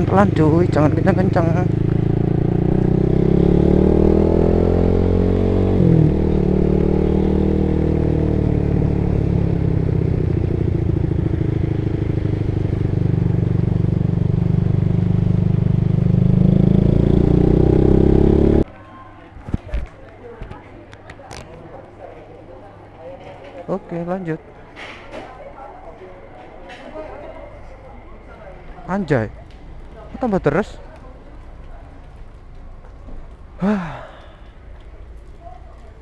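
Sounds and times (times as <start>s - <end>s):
motorcycle engine revving: 0.0s - 18.6s.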